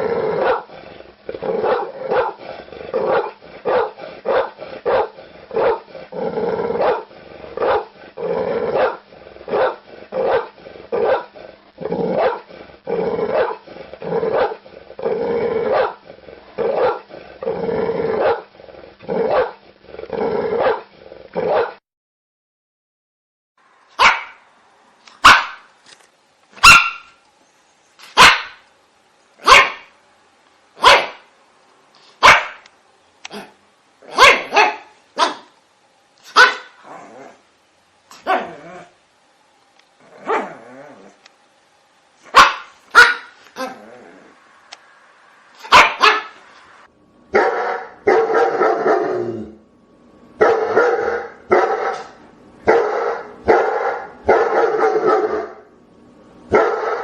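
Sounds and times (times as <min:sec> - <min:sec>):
dogs barking: 0:00.0 - 0:00.7, 0:01.6 - 0:05.9, 0:06.8 - 0:08.0, 0:08.7 - 0:11.4, 0:12.1 - 0:12.5, 0:13.3 - 0:13.6, 0:14.3 - 0:14.6, 0:15.7 - 0:16.0, 0:16.7 - 0:17.1, 0:18.2 - 0:18.5, 0:19.2 - 0:19.6, 0:20.6 - 0:21.8, 0:24.0 - 0:24.4, 0:25.2 - 0:25.7, 0:26.6 - 0:27.2, 0:28.1 - 0:28.6, 0:29.4 - 0:29.9, 0:30.8 - 0:31.3, 0:32.2 - 0:32.7, 0:34.1 - 0:35.5, 0:36.3 - 0:36.8, 0:42.3 - 0:43.8, 0:45.6 - 0:46.4, 0:47.3 - 0:49.2, 0:50.4 - 0:55.7, 0:56.5 - 0:57.0.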